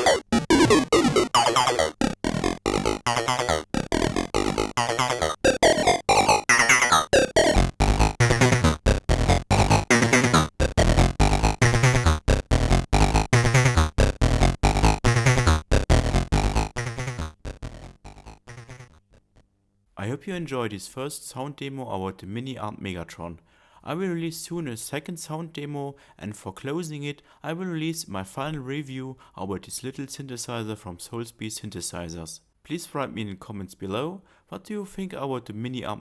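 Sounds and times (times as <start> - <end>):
synthesizer playing choppy notes: 0.0 - 19.0.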